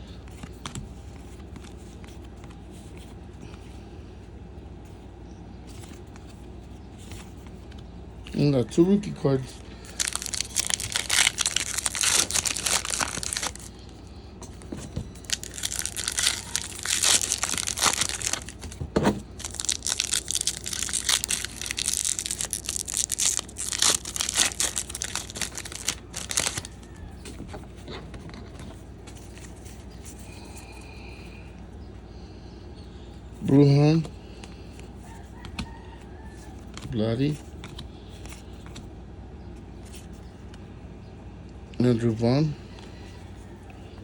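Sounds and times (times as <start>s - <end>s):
foil wrappers tearing and crinkling: 9.9s - 13.9s, 14.5s - 27.0s.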